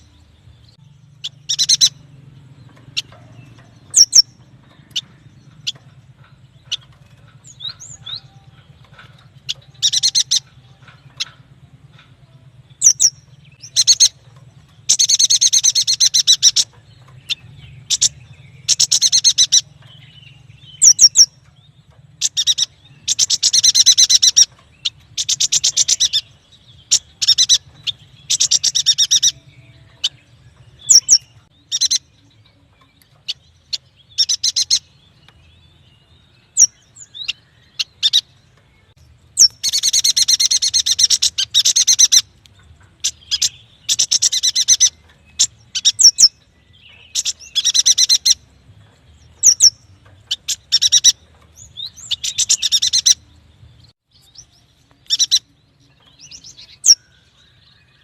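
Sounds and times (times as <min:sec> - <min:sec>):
bird chattering trills: 0:00.0 - 0:53.3, 0:54.3 - 0:58.0
sharp bird chirps: 0:00.7 - 0:02.1, 0:02.8 - 0:14.2, 0:14.8 - 0:30.2, 0:30.8 - 0:32.2, 0:49.3 - 0:53.3, 0:54.2 - 0:58.0.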